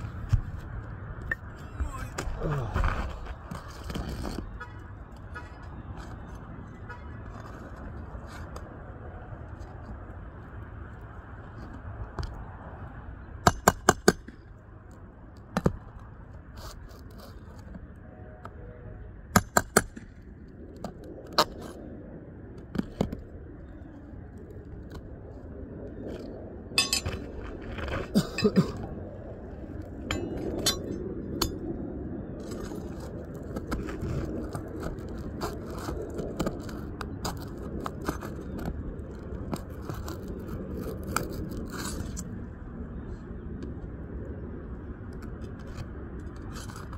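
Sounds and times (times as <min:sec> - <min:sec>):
scraping and rustling of shingles: 0:00.0 - 0:10.2, 0:14.9 - 0:18.0, 0:22.6 - 0:31.7, 0:32.4 - 0:42.4, 0:45.2 - 0:46.9.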